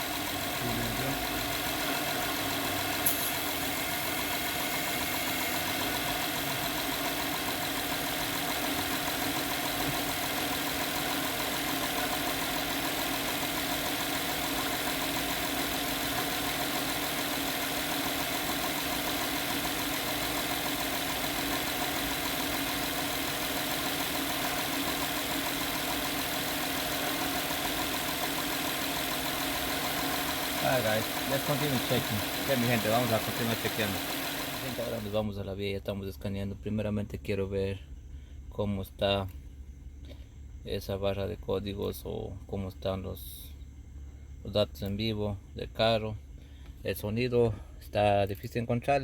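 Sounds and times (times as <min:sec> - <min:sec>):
car engine idling: 0:00.0 - 0:35.2.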